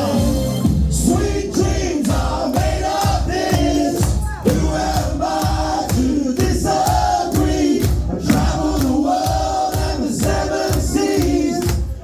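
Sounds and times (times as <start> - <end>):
live band music: 0.0 - 4.7
crowd singing along: 0.0 - 12.0
steady drum beat: 0.0 - 12.0.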